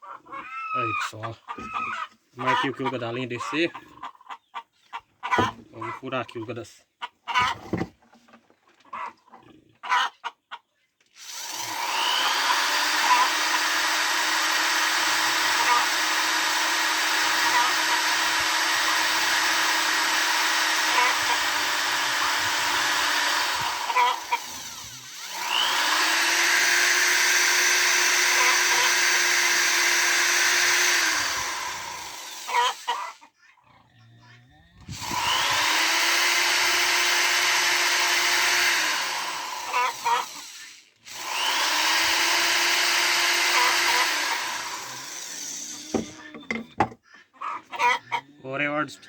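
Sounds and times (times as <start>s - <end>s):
electric drill boring into wood: 11.2s - 33.2s, 34.8s - 47.0s.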